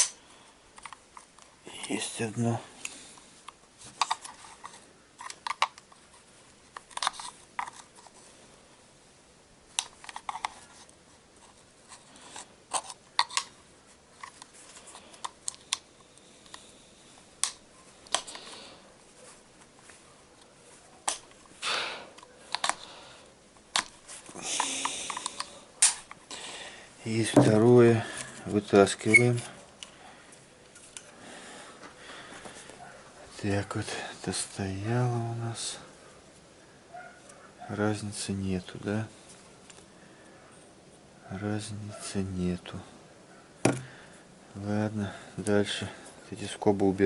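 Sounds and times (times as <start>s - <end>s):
metal and plastic clicks and scrapes: 0.8s - 1.5s, 3.5s - 8.2s, 9.7s - 16.7s, 22.2s - 22.8s, 23.7s - 26.3s.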